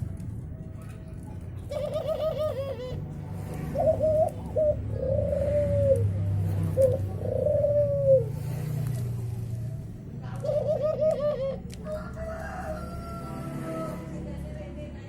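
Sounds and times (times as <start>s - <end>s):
bird calling: 1.7s - 3.0s.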